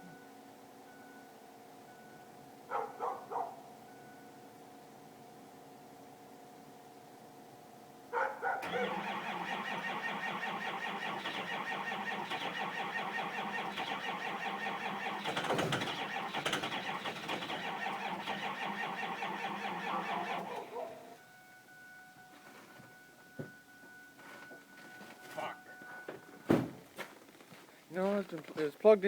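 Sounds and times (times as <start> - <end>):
diesel engine cranking on starter: 8.6 - 21.2.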